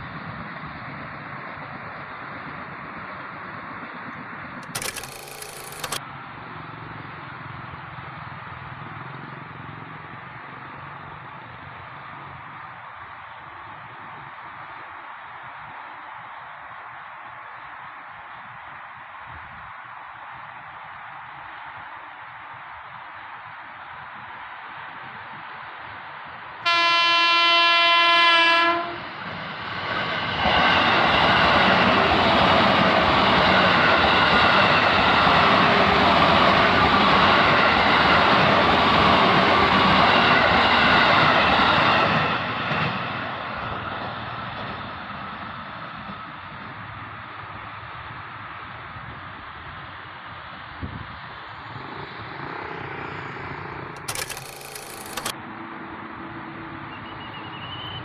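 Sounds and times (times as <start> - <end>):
electric train running: 4.6 - 6.0, 54.0 - 55.3
train wheels rattling on track: 4.6 - 6.0, 26.6 - 47.1, 53.9 - 55.4
train horn blast: 26.6 - 29.1.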